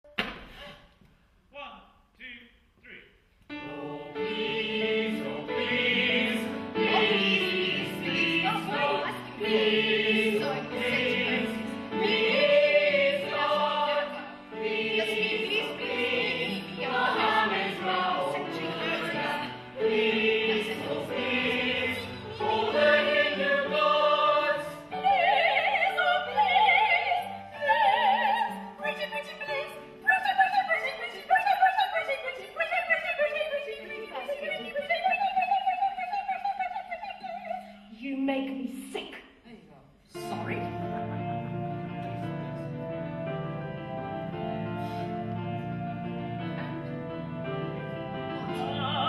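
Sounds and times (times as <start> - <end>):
music: 3.4 - 49.0
operatic singing: 3.5 - 38.0, 48.4 - 49.0.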